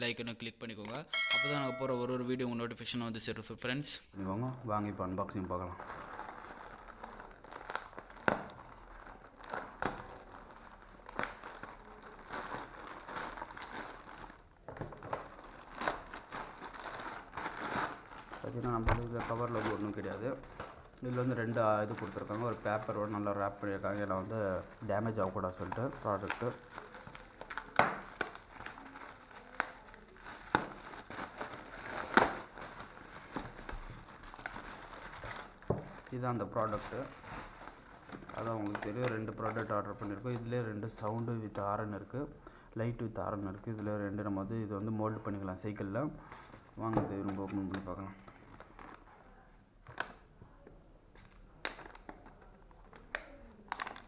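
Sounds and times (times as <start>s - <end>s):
packaging crinkling: 5.5s - 41.4s, 46.3s - 49.1s, 51.2s - 54.0s.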